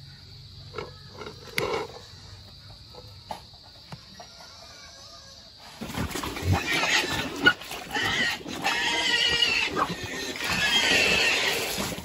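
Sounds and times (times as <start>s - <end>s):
pigs squealing: 4.2s - 12.0s.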